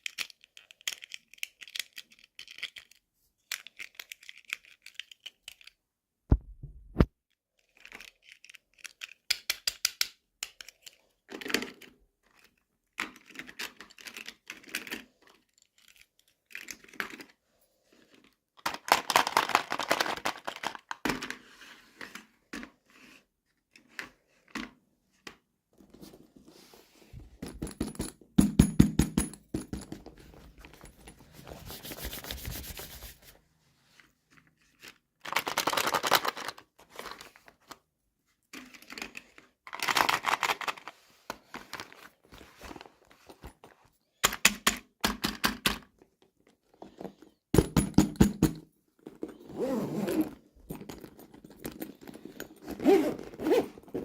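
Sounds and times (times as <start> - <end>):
small plastic pieces clicking: 0.0 - 5.8, 7.6 - 17.3.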